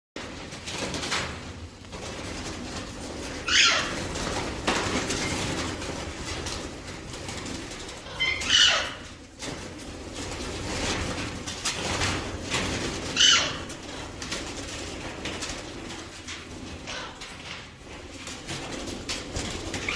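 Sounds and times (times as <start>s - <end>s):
parrots calling: 3.4s - 4.1s, 8.0s - 9.1s, 13.1s - 13.7s.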